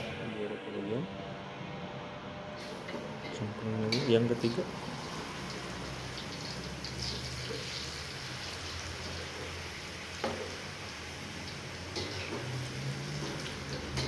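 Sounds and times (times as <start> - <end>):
deep-frying crackling sizzle: 2.6 - 14.0.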